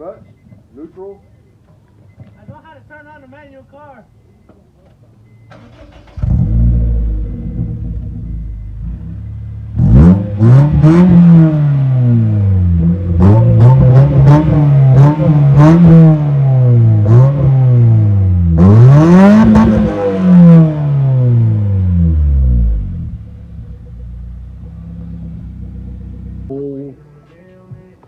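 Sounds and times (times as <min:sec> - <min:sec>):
car engine revving: 0:05.5 - 0:27.3.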